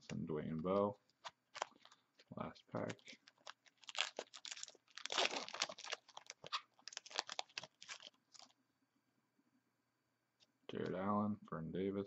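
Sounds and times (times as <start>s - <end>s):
card pack wrapper crinkling: 0.1s - 8.6s.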